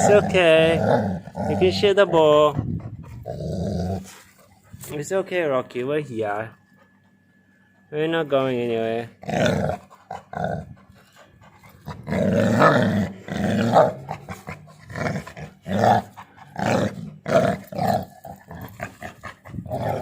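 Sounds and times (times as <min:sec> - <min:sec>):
dog growling: 0:00.0 - 0:04.8, 0:09.0 - 0:20.0.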